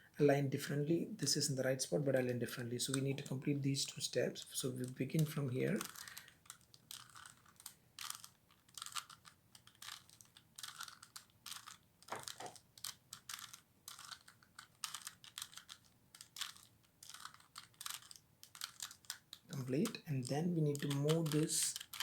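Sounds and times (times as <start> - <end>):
puzzle cube layers clicking: 4.6 - 22.0.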